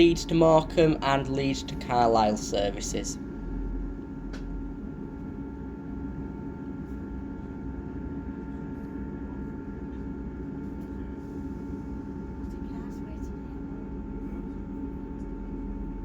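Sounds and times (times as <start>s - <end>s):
train interior rumble: 0.0s - 8.0s.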